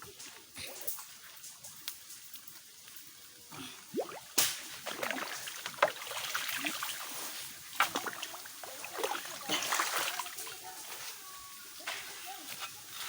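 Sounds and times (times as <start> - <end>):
mud splashing and squelching: 3.9 - 10.8.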